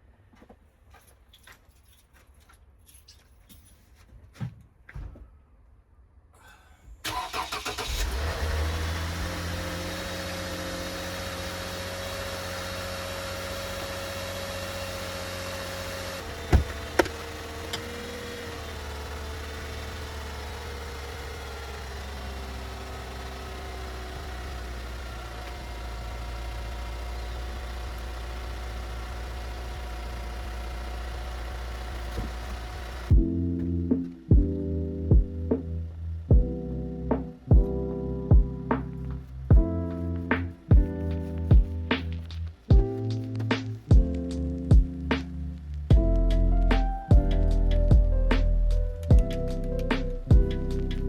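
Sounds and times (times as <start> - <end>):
car engine starting and idling: 7.0 - 51.0
engine whine: 7.1 - 36.6, 45.2 - 51.0.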